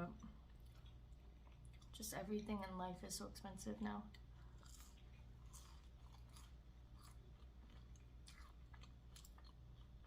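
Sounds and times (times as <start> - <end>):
chewing food: 0.0 - 2.5, 4.0 - 10.0
low steady hum: 0.0 - 10.0.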